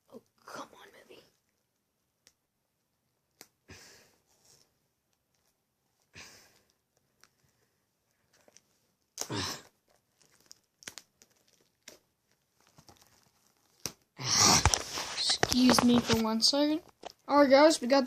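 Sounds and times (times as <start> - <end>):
small crackles: 4.3 - 18.0
packaging crinkling and tearing: 8.3 - 16.3.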